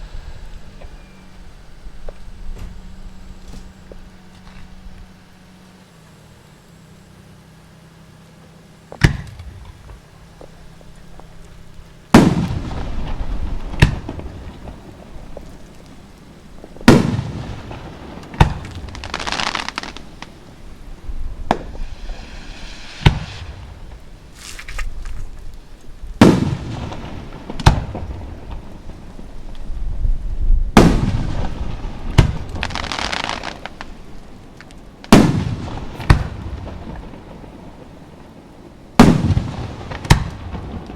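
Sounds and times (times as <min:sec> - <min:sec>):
falling stars hissing and crackling: 0:00.0 - 0:40.9
firework shells booming: 0:08.9 - 0:40.9.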